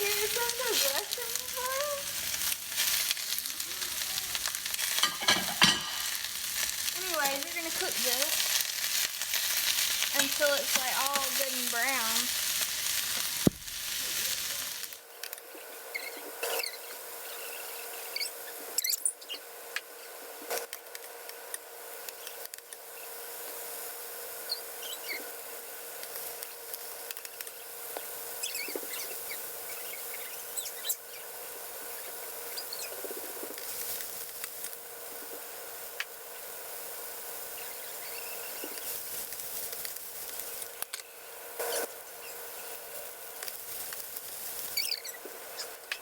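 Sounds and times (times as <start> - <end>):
oil popping and crackling: 0.0 - 15.4, 31.8 - 36.2, 37.5 - 41.9, 43.2 - 46.0
vegetables sizzling in oil: 0.0 - 46.0.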